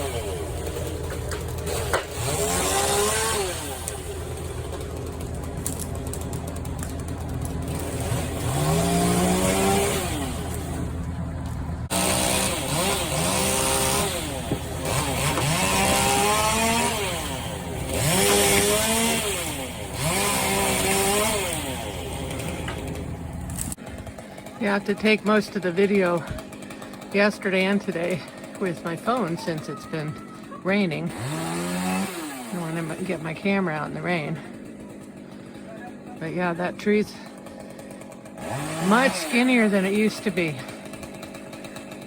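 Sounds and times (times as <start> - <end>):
chainsaw revving: 0.0 - 42.0
low engine hum: 10.2 - 12.0.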